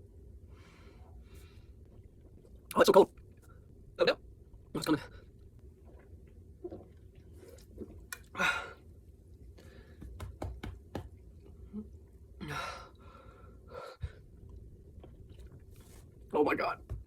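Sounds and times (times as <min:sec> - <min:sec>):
mouth and throat clicks: 0:07.8 - 0:08.3.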